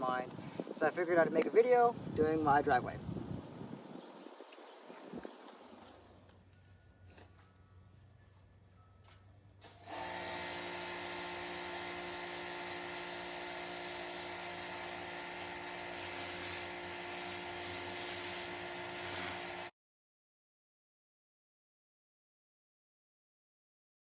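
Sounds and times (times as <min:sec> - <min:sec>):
machine hum: 0:09.6 - 0:19.7
pressure washer spraying: 0:09.6 - 0:19.7.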